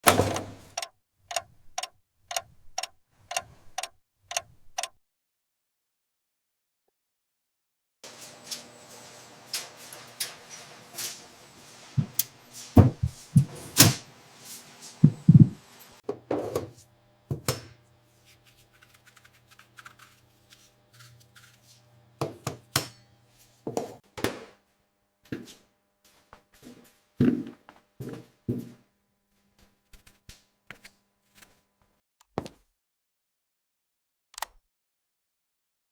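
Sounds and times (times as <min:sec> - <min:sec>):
irregular thuds and knocks: 0:15.0 - 0:16.2.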